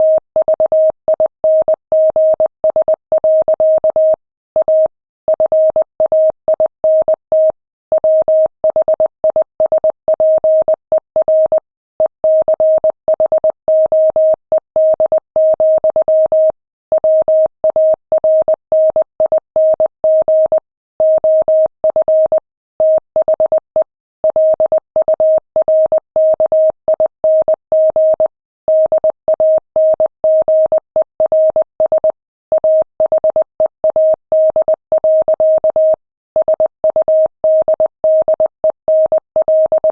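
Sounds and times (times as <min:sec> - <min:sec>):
morse code beeps: 0:18.4 - 0:39.9.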